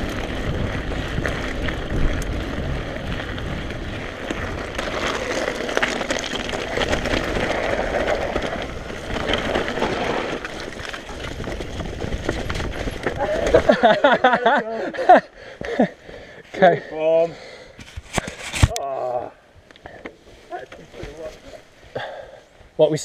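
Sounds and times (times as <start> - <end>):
wind buffeting microphone: 0.0 - 5.8
bike rattling clicks: 0.0 - 13.9
bike tyres on dirt trail: 0.0 - 23.0.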